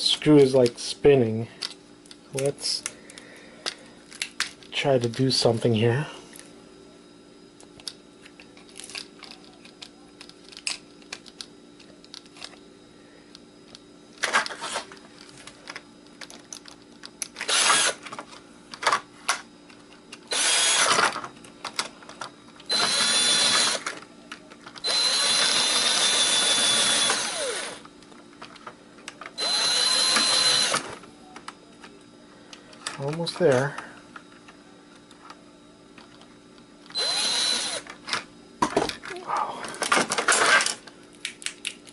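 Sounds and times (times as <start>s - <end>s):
tool handling clicks: 7.6s - 12.6s
electric drill running: 17.4s - 18.0s, 20.3s - 21.1s, 22.7s - 23.9s, 24.8s - 27.9s, 29.4s - 31.0s, 36.9s - 37.9s.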